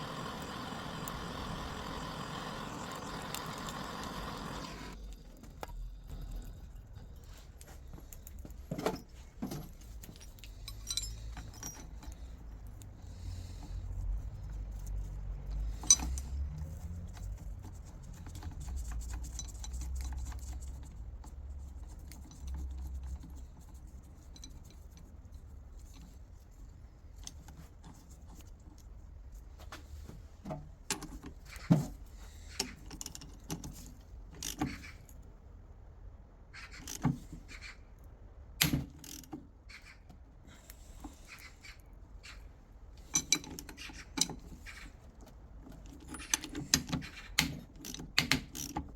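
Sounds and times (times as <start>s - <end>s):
metal parts clinking: 9.0s - 12.8s, 15.5s - 16.4s, 43.0s - 44.6s.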